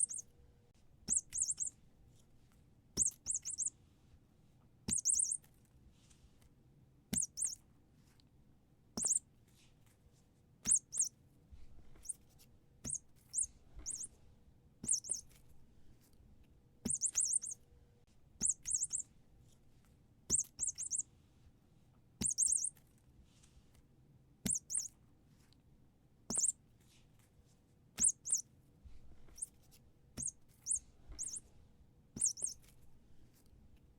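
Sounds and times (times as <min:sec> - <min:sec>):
squeaky toy squeaking: 0:00.0 - 0:00.3, 0:01.1 - 0:01.8, 0:03.0 - 0:03.7, 0:04.9 - 0:05.4, 0:07.1 - 0:07.6, 0:09.0 - 0:09.2, 0:10.6 - 0:11.1, 0:12.9 - 0:14.1, 0:14.8 - 0:15.4, 0:16.9 - 0:17.6, 0:18.4 - 0:19.0, 0:20.3 - 0:21.0, 0:22.2 - 0:22.7, 0:24.5 - 0:24.9, 0:26.3 - 0:26.5, 0:28.0 - 0:28.4, 0:30.2 - 0:31.4, 0:32.2 - 0:32.6.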